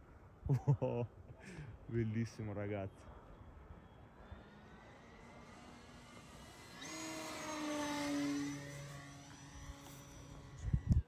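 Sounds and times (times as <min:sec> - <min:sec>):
model plane motor whining: 0:03.2 - 0:11.0.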